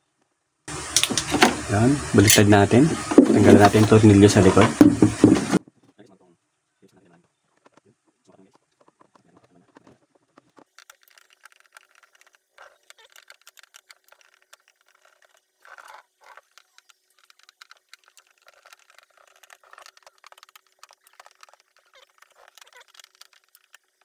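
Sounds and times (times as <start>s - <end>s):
scraping noise: 2.1s - 5.6s.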